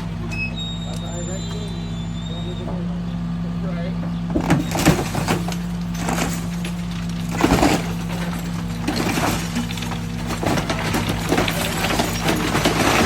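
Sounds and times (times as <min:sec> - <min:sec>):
heavy machine engine running: 0:00.0 - 0:13.0
glass and wood crashing: 0:04.3 - 0:13.0.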